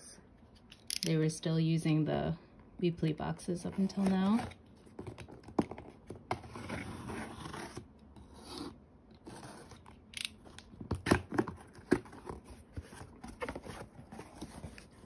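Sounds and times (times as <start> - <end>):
cardboard and tape scraping: 3.8 - 10.0, 10.9 - 15.0.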